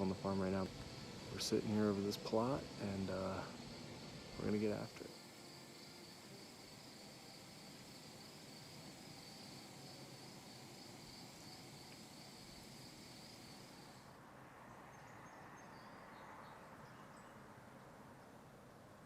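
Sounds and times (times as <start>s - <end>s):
crickets trilling: 0.0s - 14.2s.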